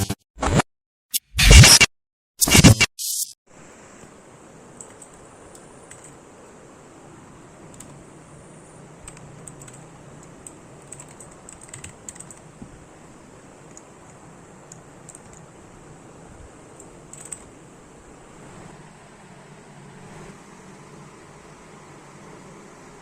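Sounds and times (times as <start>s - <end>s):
mechanical keyboard clicks: 9.1s - 12.5s, 16.8s - 17.5s.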